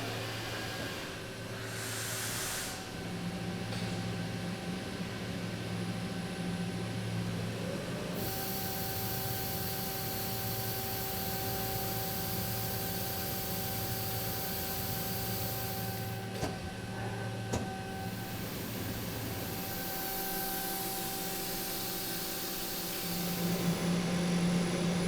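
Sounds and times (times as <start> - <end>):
high air hiss: 1.6 - 2.9.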